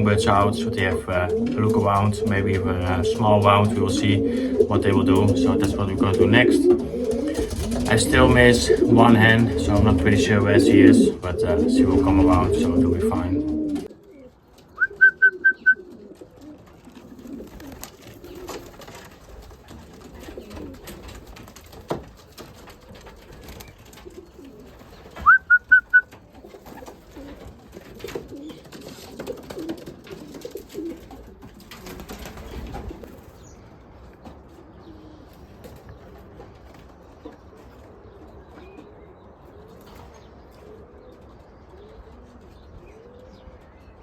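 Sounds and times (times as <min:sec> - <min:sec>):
pigeons cooing: 0:00.0 - 0:44.0
rustling and clicks: 0:00.3 - 0:34.5
high whistled notes: 0:14.8 - 0:15.8.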